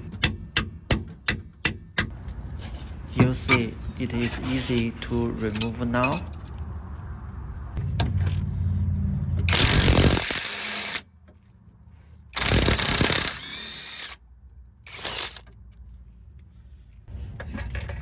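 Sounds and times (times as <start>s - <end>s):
power tool bursts: 9.5s - 11.0s, 12.4s - 14.2s.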